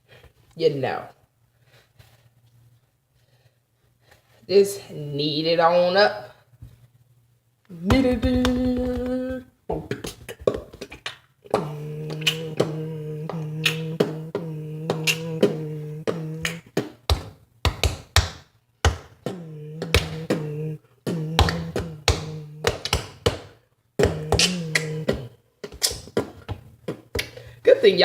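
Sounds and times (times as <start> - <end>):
person humming: 7.7 - 10.1, 11.5 - 16.8, 19.2 - 23.3, 24.0 - 25.4.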